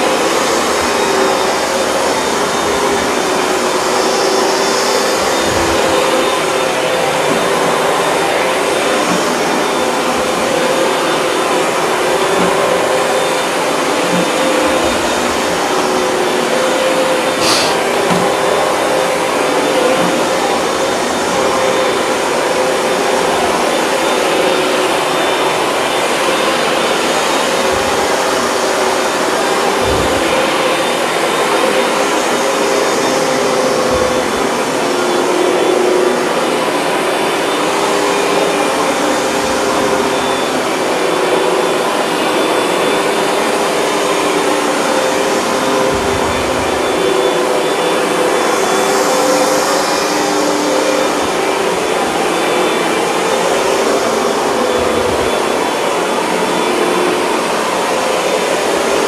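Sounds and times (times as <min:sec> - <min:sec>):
high hiss: 0:00.0 - 0:10.9, 0:12.8 - 0:22.0
carpet cleaner motor running: 0:00.0 - 0:59.0.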